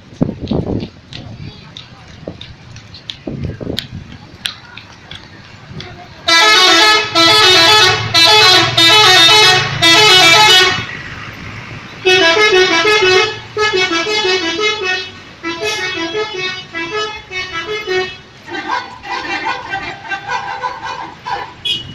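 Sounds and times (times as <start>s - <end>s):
musical air horn melody: 6.3s - 10.9s, 12.0s - 18.3s.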